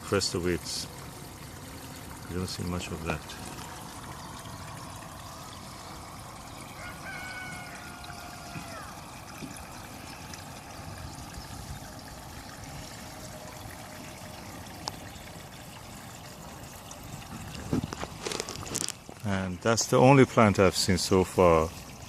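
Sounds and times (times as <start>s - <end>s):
water pouring from hose: 0.0s - 22.0s
distant drawn-out call: 6.4s - 9.4s.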